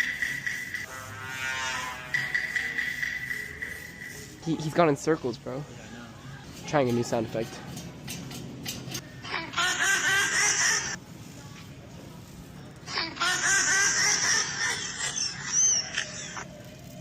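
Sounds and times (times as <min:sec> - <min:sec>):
baby laughing: 0:09.3 - 0:11.0, 0:12.9 - 0:16.4.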